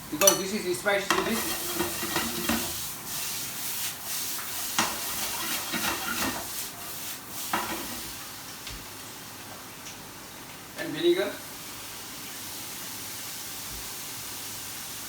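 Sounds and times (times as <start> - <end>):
stir-fry sizzling in hot oil: 0.0 - 10.4, 11.1 - 15.0
utensil scraping and knocking pan: 0.2 - 2.9, 4.4 - 6.6.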